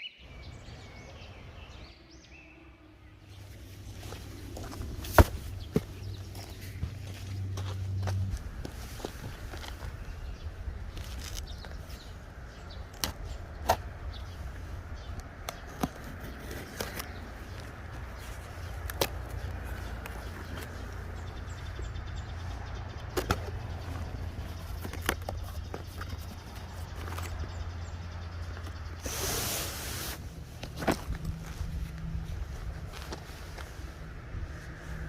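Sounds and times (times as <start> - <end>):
camping gear clicks and knocks: 4.0 - 14.3, 15.0 - 27.8, 30.1 - 33.9.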